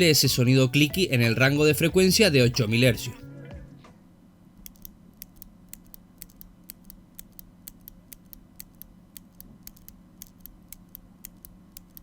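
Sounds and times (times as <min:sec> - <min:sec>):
mechanical keyboard clicks: 0:04.6 - 0:12.0.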